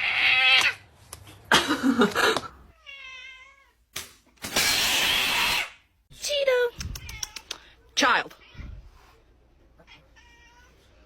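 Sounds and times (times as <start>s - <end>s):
cat meowing: 2.7s - 3.8s, 9.8s - 10.9s.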